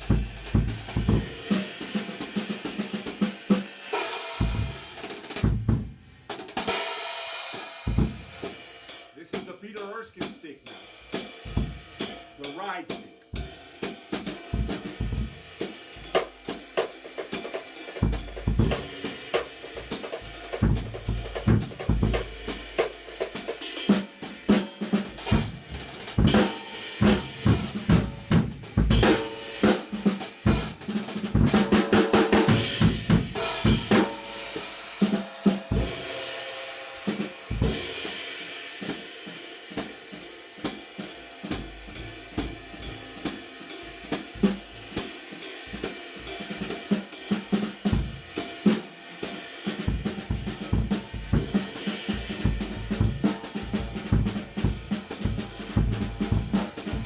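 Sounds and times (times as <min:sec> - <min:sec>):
bass drum: 0:00.0 - 0:02.1, 0:04.3 - 0:06.2, 0:07.8 - 0:08.6, 0:11.2 - 0:12.2, 0:13.4 - 0:17.1, 0:17.9 - 0:23.6, 0:25.0 - 0:36.2, 0:37.0 - 0:38.2, 0:44.0 - 0:45.1, 0:47.5 - 0:48.5, 0:49.7 - 0:57.0
snare drum: 0:00.0 - 0:57.0
ride cymbal sizzle: 0:06.7 - 0:31.0, 0:32.5 - 0:57.0.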